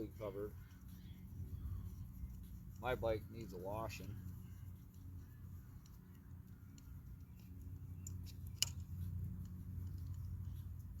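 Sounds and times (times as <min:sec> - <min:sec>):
steady low hum: 0:00.0 - 0:11.0
small tool clicks: 0:06.8 - 0:10.3.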